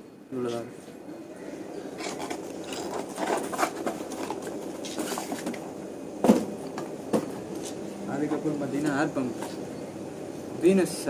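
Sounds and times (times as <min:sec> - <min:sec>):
packaging rustling and crinkling: 0:02.0 - 0:05.6.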